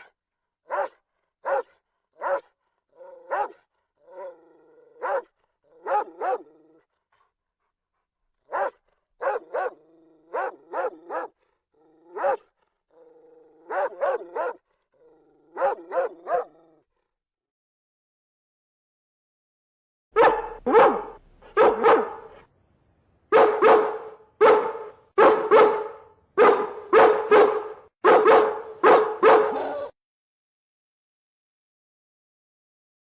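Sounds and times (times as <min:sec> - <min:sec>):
animal bark-like yips: 0:00.7 - 0:04.4, 0:05.0 - 0:06.5, 0:08.5 - 0:11.4, 0:12.1 - 0:12.5, 0:13.6 - 0:14.6, 0:15.5 - 0:16.6, 0:20.2 - 0:22.4, 0:23.3 - 0:30.0.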